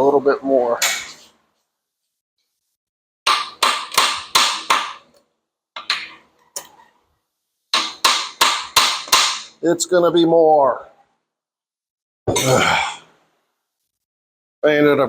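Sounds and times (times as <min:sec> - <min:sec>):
hammer tapping on metal: 0:03.3 - 0:05.1, 0:07.8 - 0:09.5.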